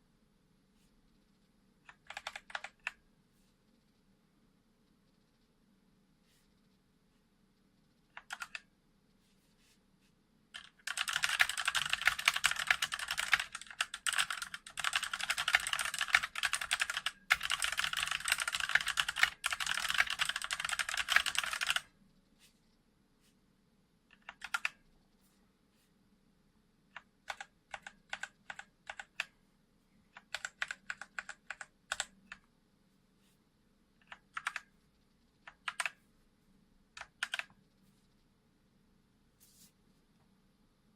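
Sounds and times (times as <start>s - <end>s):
mechanical keyboard typing: 1.9s - 3.0s, 8.1s - 8.7s, 10.6s - 21.9s, 24.1s - 24.8s, 26.9s - 29.3s, 30.1s - 32.5s, 34.0s - 34.7s, 35.3s - 36.0s, 36.9s - 37.6s.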